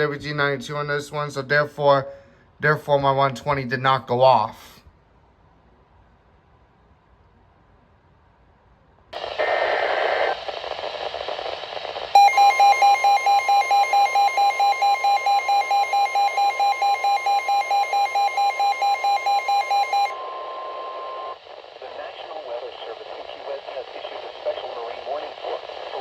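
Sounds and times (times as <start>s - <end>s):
radio hiss: 9.2s - 13.9s, 19.9s - 26.0s
rapid alarm beeping: 12.1s - 21.4s
steady warning tone: 12.1s - 26.0s.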